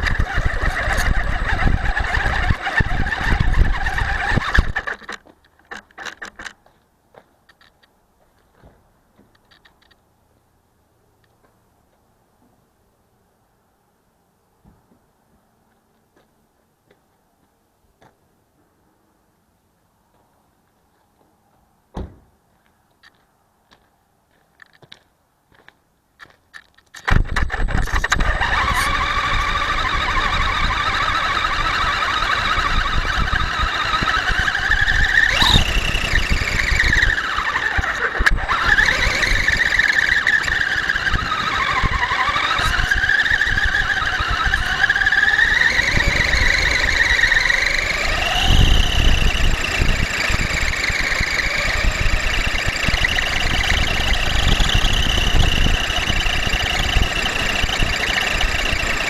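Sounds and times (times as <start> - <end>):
steady rumble: 0.0 - 5.0, 27.2 - 59.0
rc truck motor whining: 0.0 - 6.6, 27.0 - 59.0.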